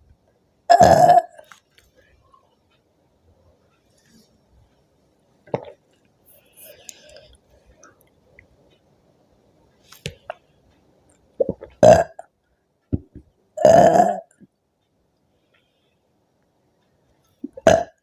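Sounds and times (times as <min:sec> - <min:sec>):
woman burping: 0:00.7 - 0:01.4, 0:11.4 - 0:12.2, 0:13.6 - 0:14.4, 0:17.4 - 0:18.0.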